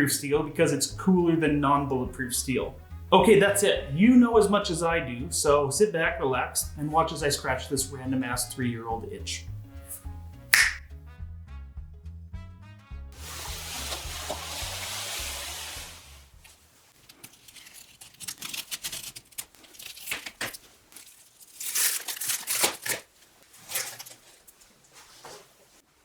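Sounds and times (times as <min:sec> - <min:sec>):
background music: 0:00.0 - 0:16.5
packaging tearing and crinkling: 0:17.0 - 0:24.6.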